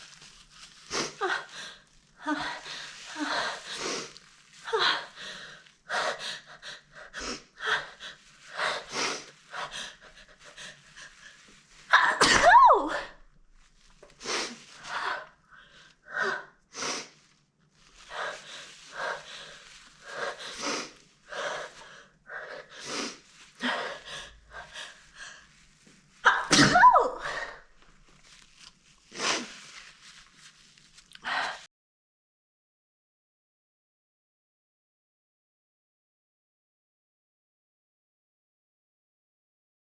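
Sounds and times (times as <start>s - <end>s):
woman sneezing loudly: 11.9s - 13.2s, 26.2s - 27.6s
woman gasping before sneeze: 12.0s - 13.2s, 26.2s - 27.7s.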